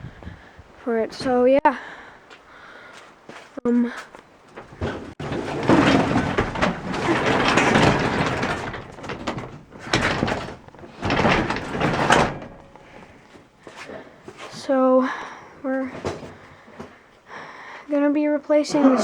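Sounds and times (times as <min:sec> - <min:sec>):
heavy door sliding on tracks: 0:04.5 - 0:13.8.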